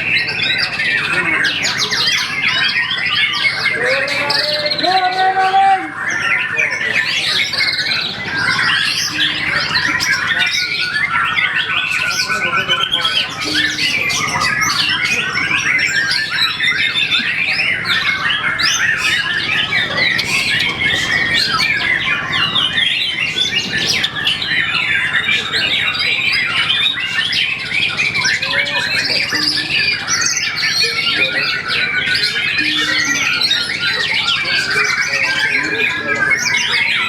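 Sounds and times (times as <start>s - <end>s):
songbird singing: 0.0s - 37.0s.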